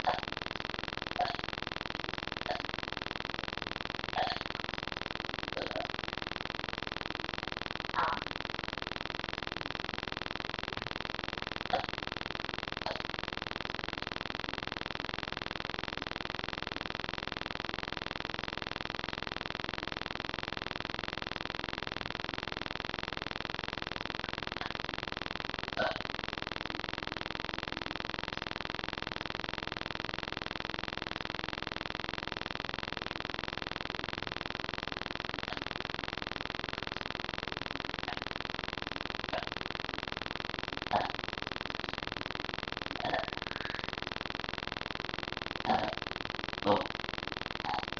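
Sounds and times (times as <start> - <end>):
microphone noise hiss: 7.9 - 8.5, 40.8 - 47.9.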